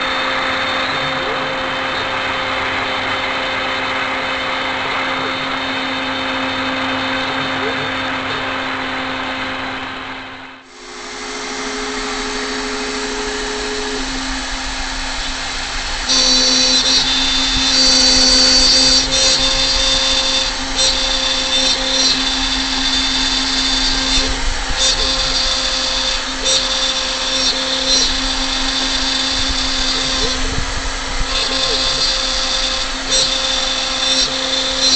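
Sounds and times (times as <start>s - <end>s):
router bit cutting wood: 0.0s - 34.9s
router spindle whine: 0.0s - 34.9s.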